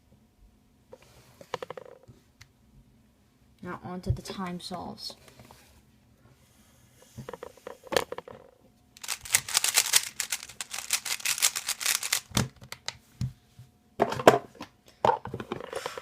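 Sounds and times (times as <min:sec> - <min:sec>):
puzzle cube plastic clicks: 0:09.0 - 0:13.0.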